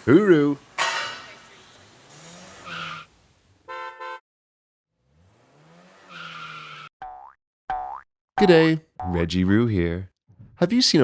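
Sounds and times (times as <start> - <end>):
car engine revving: 2.0 - 3.1, 5.0 - 6.9
car horn toot: 3.7 - 4.2.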